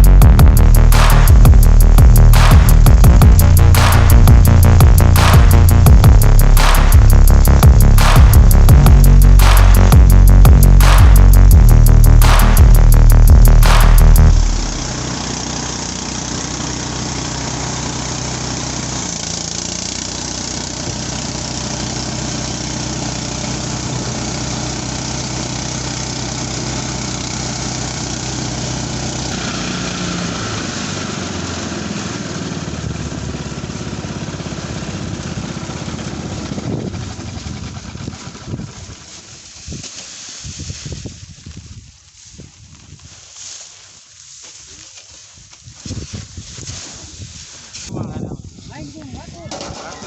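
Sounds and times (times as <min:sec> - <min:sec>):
small engine running: 0:00.0 - 0:39.6.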